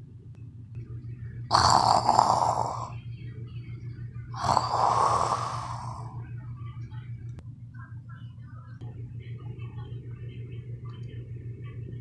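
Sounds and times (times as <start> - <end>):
person snoring loudly: 1.5 - 3.0, 4.4 - 6.2.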